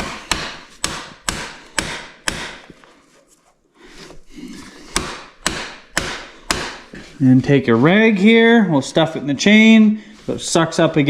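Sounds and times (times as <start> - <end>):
hammer tapping metal axle: 0.0 - 2.7.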